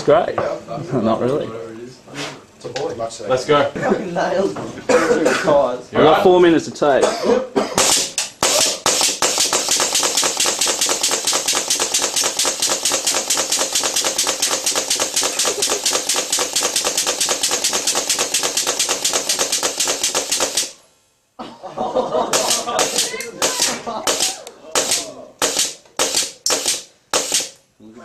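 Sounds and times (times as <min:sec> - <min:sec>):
steady machine hum: 0:00.0 - 0:28.0
machine knocking rapidly: 0:07.8 - 0:20.8, 0:22.3 - 0:27.6.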